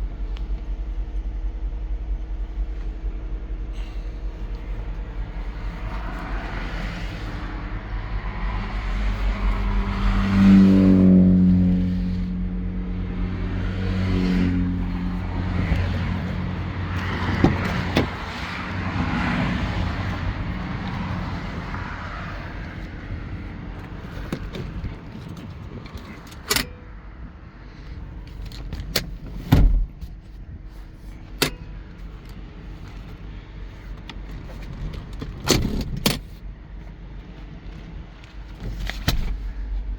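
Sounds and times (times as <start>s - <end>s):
car engine revving: 1.8s - 26.5s.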